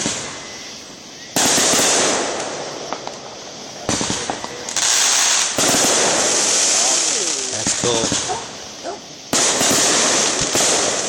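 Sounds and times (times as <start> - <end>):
fireworks crackling and popping: 0.0 - 11.0.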